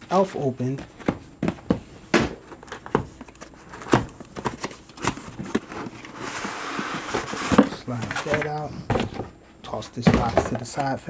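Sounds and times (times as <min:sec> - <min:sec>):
packaging scraping against cardboard: 0:02.7 - 0:09.2.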